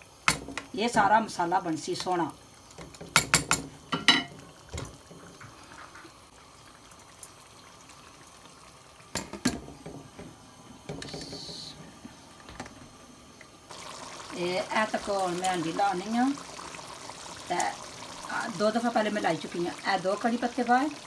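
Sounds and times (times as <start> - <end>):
food bubbling in a pan: 0.0 - 21.0.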